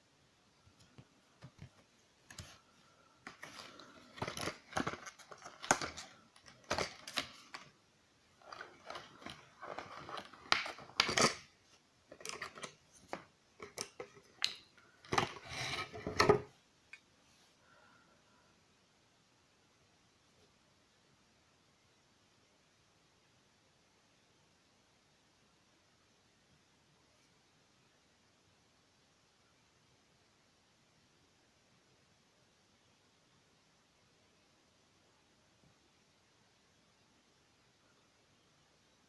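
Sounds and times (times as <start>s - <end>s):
packaging being opened: 3.2s - 7.8s, 8.4s - 11.5s, 12.1s - 16.5s.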